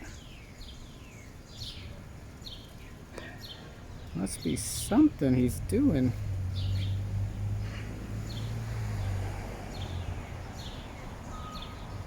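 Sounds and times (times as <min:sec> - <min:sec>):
low hum of traffic: 0:00.0 - 0:12.0
faint bird chirps: 0:11.0 - 0:12.0.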